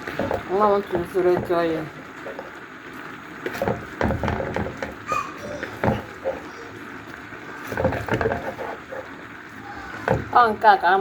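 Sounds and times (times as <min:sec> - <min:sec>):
kitchen utensils clattering: 0:03.5 - 0:06.8.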